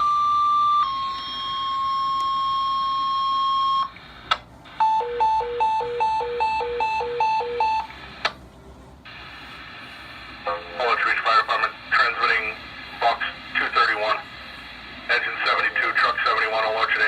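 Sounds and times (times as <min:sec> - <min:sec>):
two-tone radio alert: 0:15.1 - 0:17.0.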